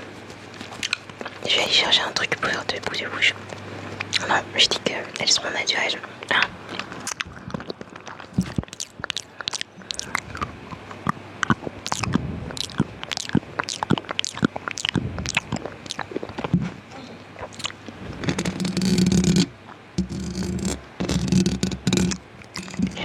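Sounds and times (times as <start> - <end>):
tongue and lip clicks: 0.7 - 1.4, 3.4 - 4.4, 6.1 - 16.7, 17.3 - 23.0.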